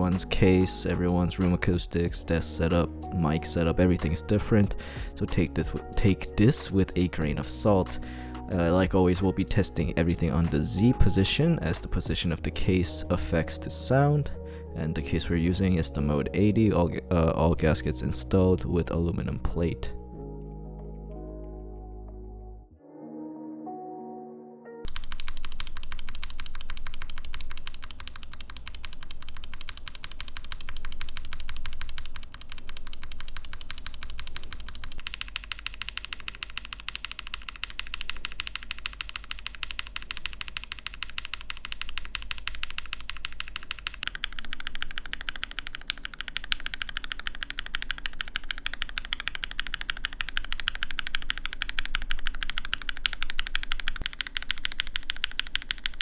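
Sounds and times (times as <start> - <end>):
mechanical keyboard keystroke clacks: 24.9 - 56.0.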